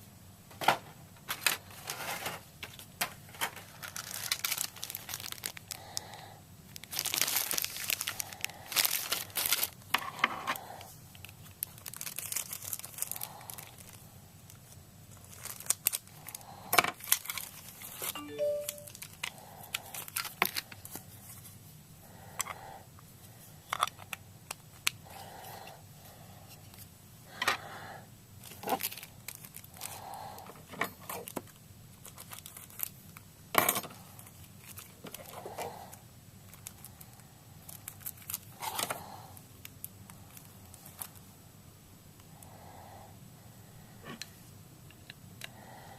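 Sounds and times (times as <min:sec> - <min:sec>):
packaging tearing and crinkling: 0:03.3 - 0:05.8, 0:06.8 - 0:09.8, 0:11.2 - 0:16.4, 0:17.0 - 0:18.1, 0:28.4 - 0:30.0, 0:31.2 - 0:33.0, 0:37.7 - 0:38.9.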